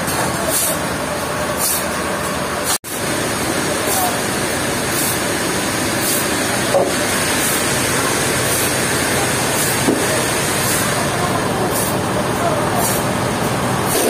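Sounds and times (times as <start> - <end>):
sawmill machinery running: 0.0 - 14.0.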